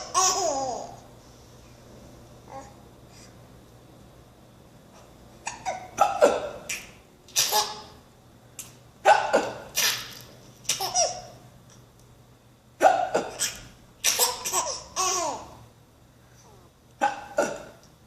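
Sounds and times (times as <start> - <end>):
baby laughing: 0.0 - 1.0, 7.4 - 7.9, 10.7 - 11.4, 13.2 - 15.6.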